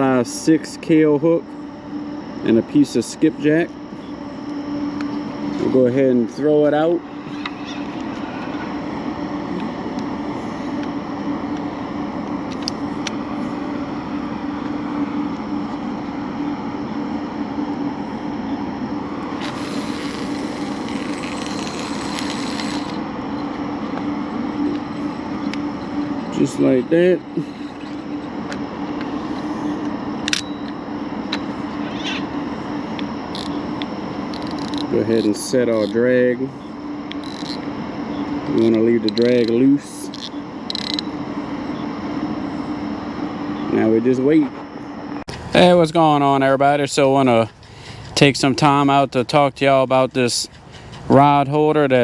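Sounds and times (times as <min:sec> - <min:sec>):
low mechanical drone: 0:00.0 - 0:52.0.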